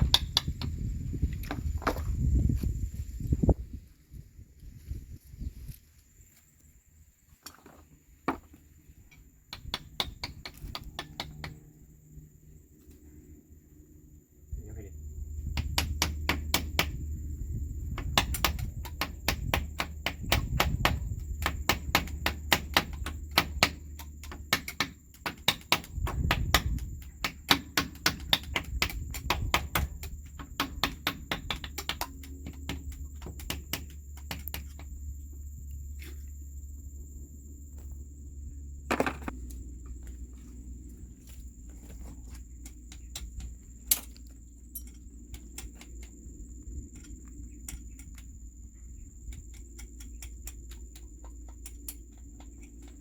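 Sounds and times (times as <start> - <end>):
low hum: 8.1 - 25.2, 26.0 - 53.0
hammer tapping: 9.5 - 11.6, 18.0 - 34.9.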